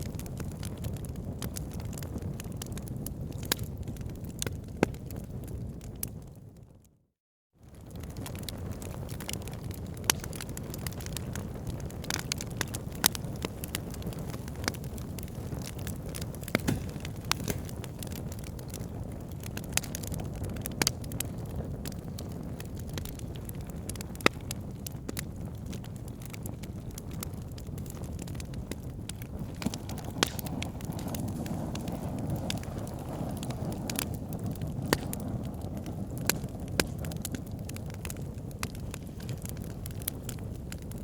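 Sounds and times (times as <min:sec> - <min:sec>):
wood fire crackling: 0:00.0 - 0:06.4, 0:07.7 - 0:41.0.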